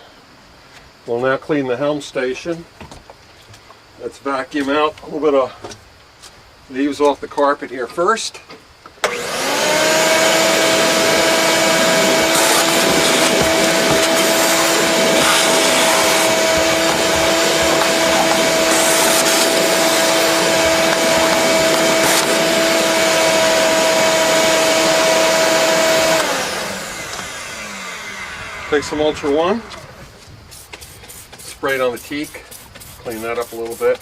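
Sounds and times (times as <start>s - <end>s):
shop vacuum running: 9.0s - 30.2s.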